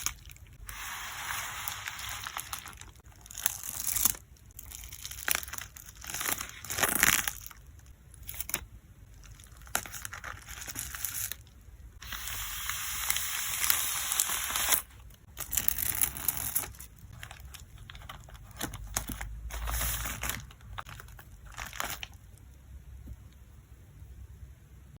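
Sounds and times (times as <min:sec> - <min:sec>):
plastic sleeves crinkling and rustling: 0:00.0 - 0:22.4.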